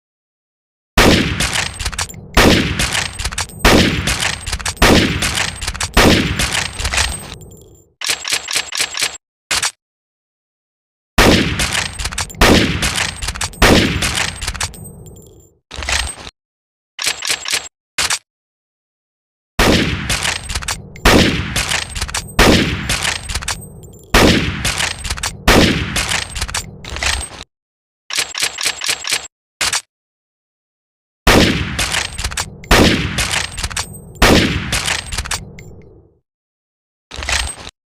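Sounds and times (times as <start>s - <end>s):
rifle shots ringing: 1.0s - 7.4s, 11.2s - 14.8s, 19.6s - 26.4s, 31.3s - 35.2s
short mechanical clicks: 2.8s - 9.8s, 17.0s - 18.2s, 28.1s - 29.9s.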